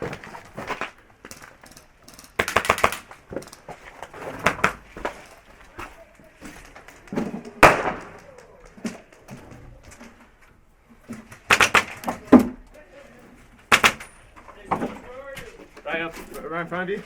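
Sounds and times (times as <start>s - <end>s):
airsoft guns firing: 1.3s - 3.7s, 7.0s - 9.3s, 11.3s - 12.6s, 13.7s - 14.2s
loud sharp gunshot crack: 7.6s - 8.3s.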